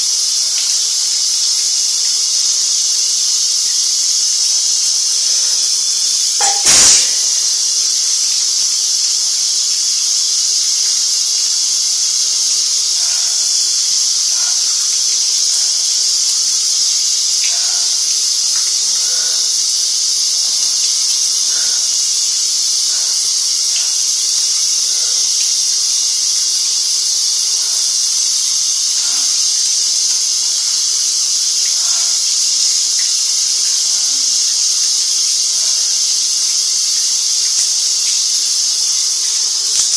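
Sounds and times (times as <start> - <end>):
shower spray hissing: 0.0 - 39.9
sudden loud burst: 6.4 - 8.0.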